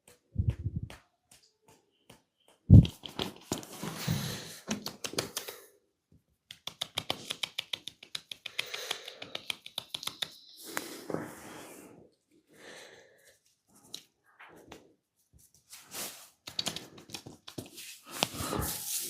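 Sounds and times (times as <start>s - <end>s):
massage taps on skin: 0.0s - 3.8s, 6.5s - 10.4s.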